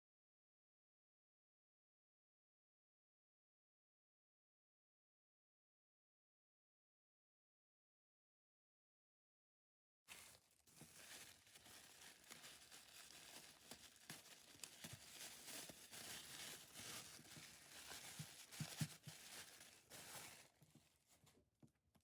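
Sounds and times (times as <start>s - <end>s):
packaging tearing and crinkling: 10.1s - 20.6s.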